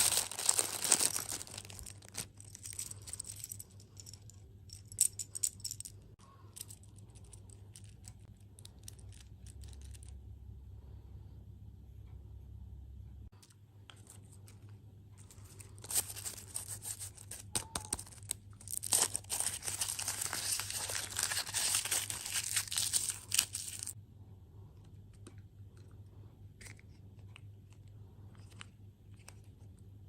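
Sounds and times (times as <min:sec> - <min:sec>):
packaging tearing and crinkling: 0:00.0 - 0:02.8, 0:15.7 - 0:24.0.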